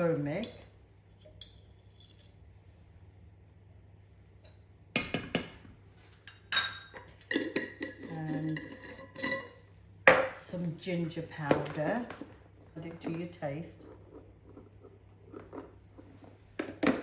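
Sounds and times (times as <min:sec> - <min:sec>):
kitchen utensils clinking: 0:06.3 - 0:10.3.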